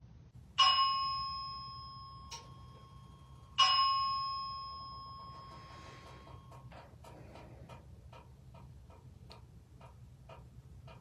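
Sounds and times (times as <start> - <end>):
fire alarm chime strike: 0.6 - 6.6.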